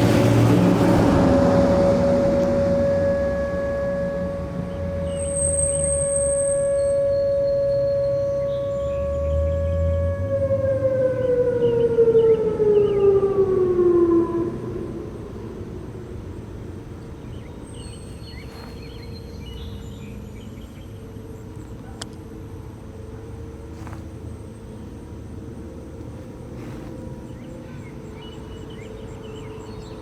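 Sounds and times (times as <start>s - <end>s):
birds chirping: 4.6s - 9.8s, 16.7s - 30.0s
steady low rumble: 14.6s - 30.0s
insects buzzing: 16.7s - 30.0s.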